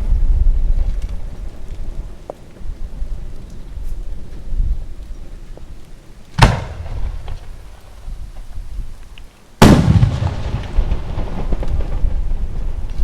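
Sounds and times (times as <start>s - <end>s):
steady low rumble: 0.0s - 13.0s
firework shells bursting: 6.4s - 8.4s
rumbling echo: 6.4s - 8.4s, 9.6s - 13.0s.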